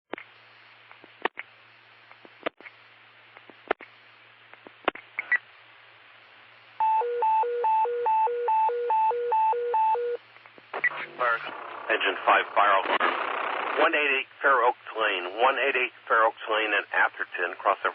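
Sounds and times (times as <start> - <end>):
radio hiss and hum: 0.1 - 6.8, 10.2 - 17.9.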